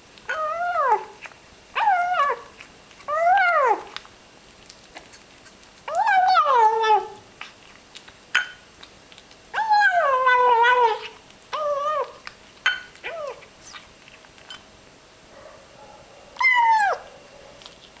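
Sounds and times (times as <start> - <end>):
kitten eating clicks: 3.9 - 6.0, 7.4 - 9.6, 11.2 - 14.7
kitten whining meows: 5.9 - 7.2, 9.6 - 12.2, 13.0 - 13.8, 16.4 - 17.8.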